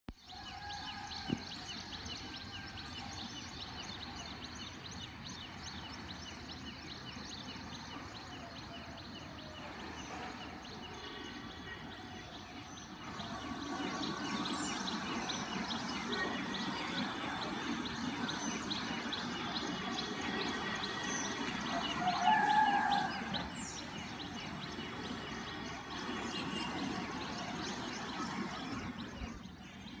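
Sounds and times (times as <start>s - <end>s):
small birds chirping: 1.3s - 30.0s.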